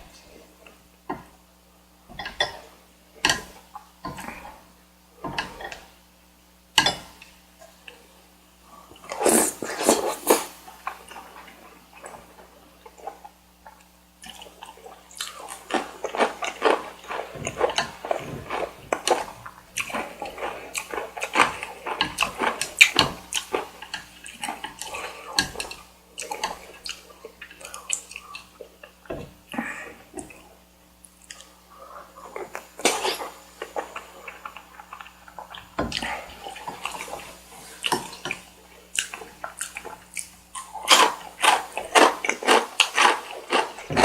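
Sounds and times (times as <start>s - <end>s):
chewing and slurping: 8.8s - 44.0s.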